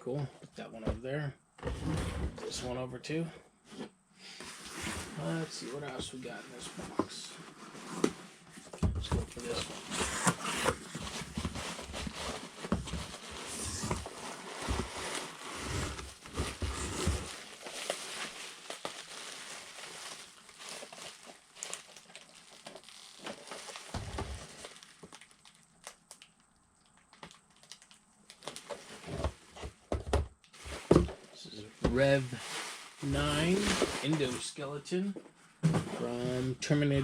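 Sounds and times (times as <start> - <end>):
cardboard and plastic crinkling: 4.4 - 34.7.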